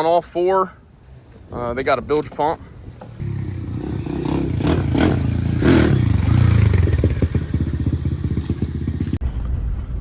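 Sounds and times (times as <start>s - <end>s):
outboard boat motor revving: 3.2s - 8.6s.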